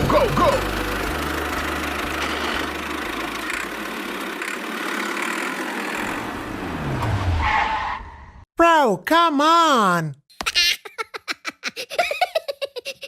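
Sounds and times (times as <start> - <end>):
small motor running: 0.2 - 6.3.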